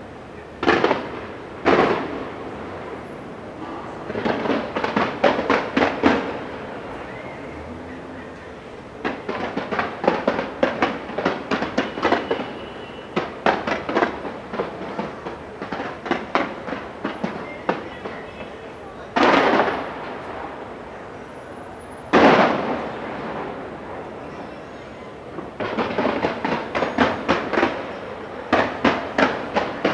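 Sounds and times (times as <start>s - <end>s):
fireworks bangs and crackles: 0.4s - 29.9s
loud firework blasts: 0.6s - 29.9s.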